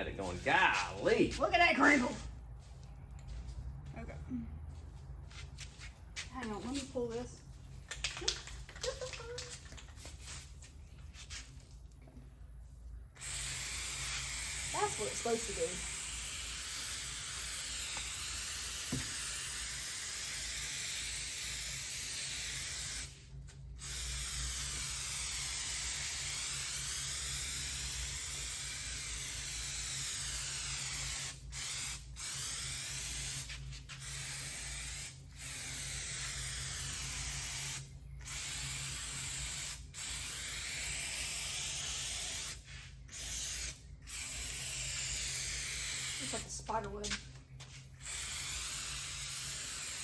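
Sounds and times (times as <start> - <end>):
spray adhesive hissing from nozzle: 13.2 - 23.2, 23.8 - 46.6, 48.0 - 50.0.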